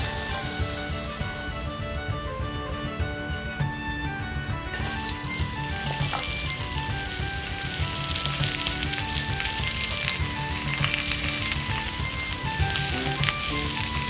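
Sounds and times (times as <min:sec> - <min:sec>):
background music: 0:00.0 - 0:14.0
food sizzling in a hot pan: 0:07.0 - 0:13.8.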